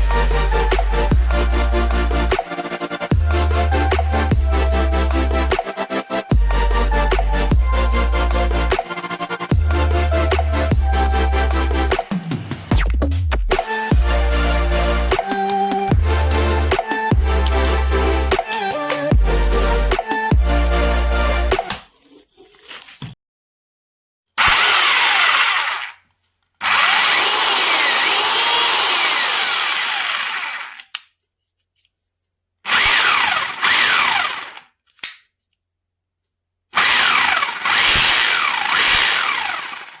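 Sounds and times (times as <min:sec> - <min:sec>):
rotary hammer drill motor whine: 0:24.4 - 0:26.0, 0:26.6 - 0:30.9, 0:32.7 - 0:34.7, 0:36.8 - 0:40.0.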